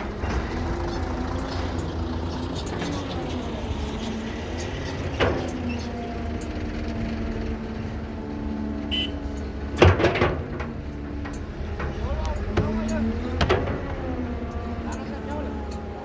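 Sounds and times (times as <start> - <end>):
diesel engine running: 0.0 - 16.0
loud knocks: 9.7 - 14.9.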